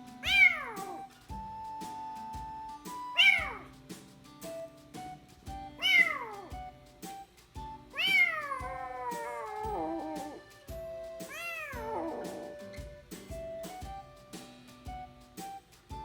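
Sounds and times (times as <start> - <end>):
background music: 0.0 - 16.0
kitten meowing loudly: 0.2 - 1.0, 3.2 - 3.7, 5.8 - 6.5, 8.0 - 10.4, 11.3 - 12.5.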